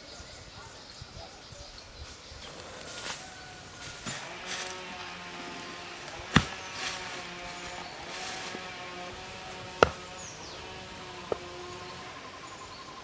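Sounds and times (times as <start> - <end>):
outdoor background: 0.0 - 13.0
sharp knocks: 9.6 - 11.8.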